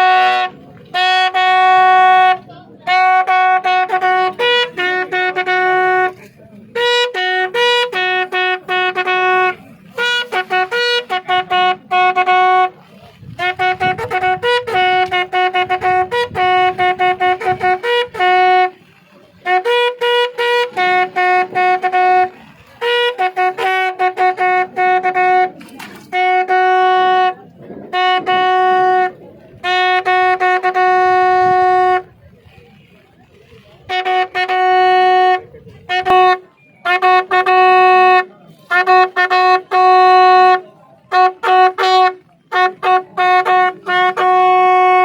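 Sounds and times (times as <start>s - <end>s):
bugle call: 19.4s - 32.2s, 33.9s - 45.0s.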